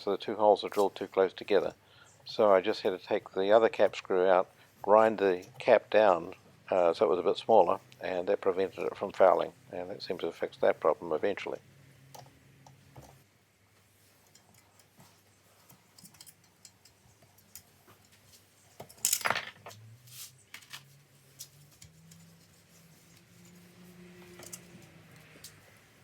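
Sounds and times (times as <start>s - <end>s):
small metal parts clicking: 15.9s - 18.2s, 18.8s - 19.8s, 24.2s - 25.6s
metallic clink: 24.3s - 24.7s.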